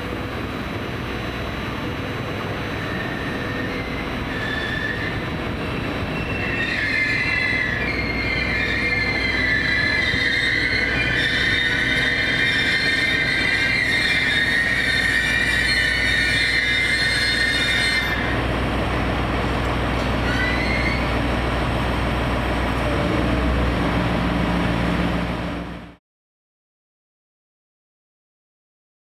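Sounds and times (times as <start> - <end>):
train running rumble: 0.0 - 26.0
train wheels squealing: 2.6 - 18.4, 20.1 - 21.3.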